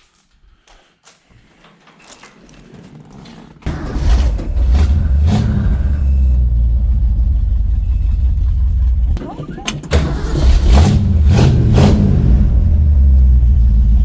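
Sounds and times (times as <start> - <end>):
car engine starting and running: 3.6 - 14.0
engine revving: 3.7 - 14.0.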